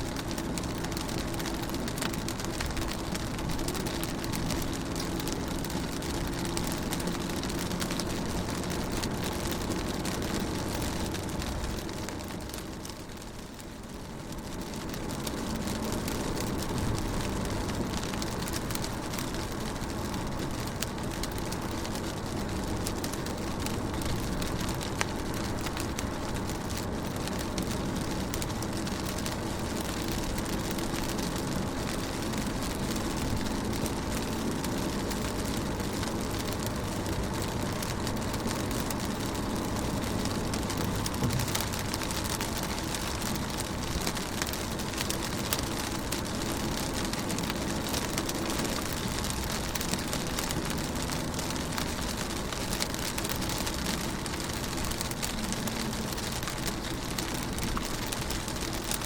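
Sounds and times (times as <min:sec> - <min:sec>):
rain on a car window: 0:00.0 - 0:59.0.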